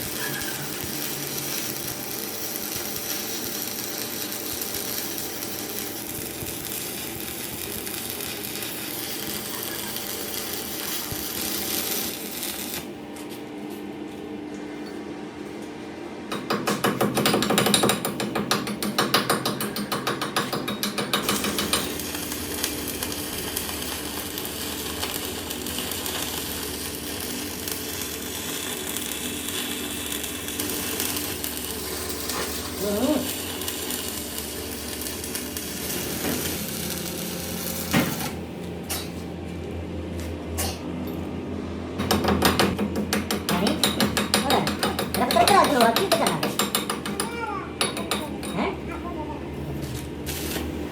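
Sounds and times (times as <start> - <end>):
machine running with low drone: 0.0 - 12.8, 20.7 - 42.8.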